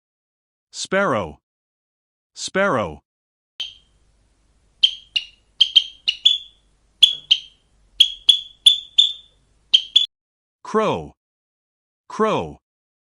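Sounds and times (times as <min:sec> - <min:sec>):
sparrow chirping: 0:03.6 - 0:04.0, 0:04.8 - 0:10.1.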